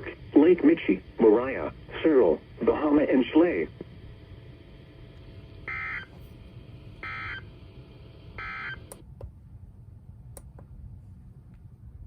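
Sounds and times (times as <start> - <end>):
radio background hiss: 0.0 - 9.0.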